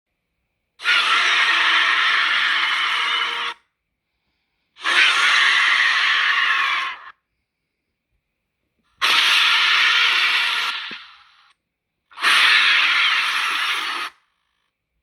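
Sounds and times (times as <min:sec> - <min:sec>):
raspy monster shrieks: 0:00.8 - 0:03.7, 0:04.8 - 0:07.2, 0:09.0 - 0:11.4, 0:12.2 - 0:14.3.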